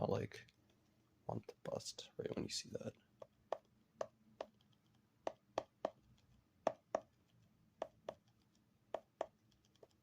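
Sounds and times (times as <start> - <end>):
fingers tapping rubber pads: 3.2 - 7.2, 7.8 - 10.0.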